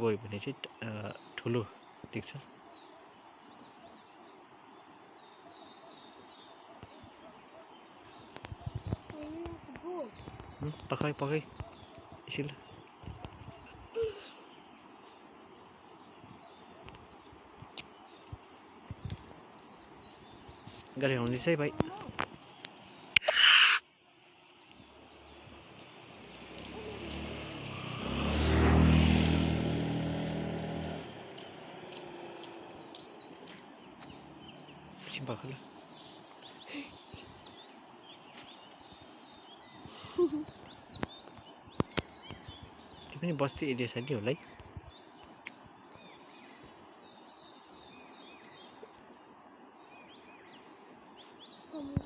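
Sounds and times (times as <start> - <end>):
birds chirping: 0.0 - 52.0
vehicle engine driving past: 25.1 - 33.4.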